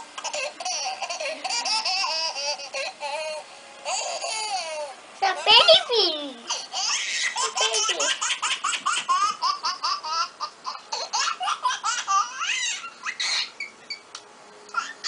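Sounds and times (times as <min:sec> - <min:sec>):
baby laughter ringtone: 0:00.3 - 0:03.3.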